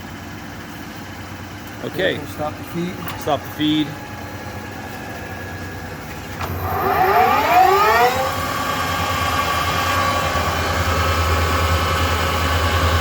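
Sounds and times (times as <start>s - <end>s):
lathe whine rising in pitch: 5.2s - 13.0s.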